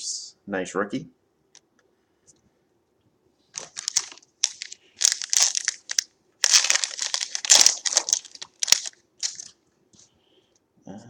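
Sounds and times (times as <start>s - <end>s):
foil wrapper crinkling and tearing: 3.6s - 9.6s.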